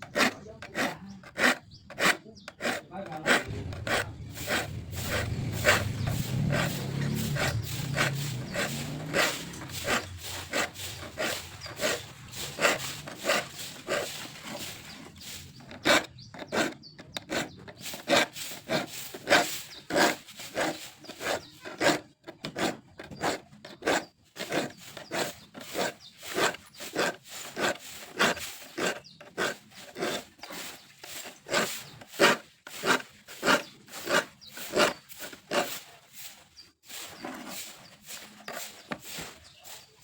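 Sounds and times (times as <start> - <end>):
hand saw cutting wood: 0.0 - 40.0.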